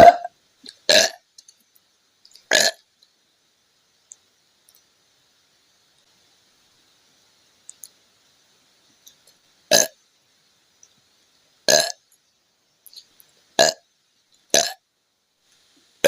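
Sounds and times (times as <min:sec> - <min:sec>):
woman burping: 0:00.0 - 0:00.3.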